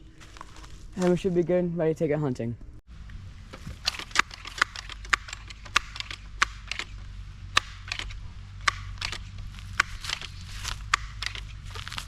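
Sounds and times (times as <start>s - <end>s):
low steady hum: 0.0s - 12.0s
air rifle pump clicks and clacks: 3.8s - 7.0s, 7.6s - 11.5s.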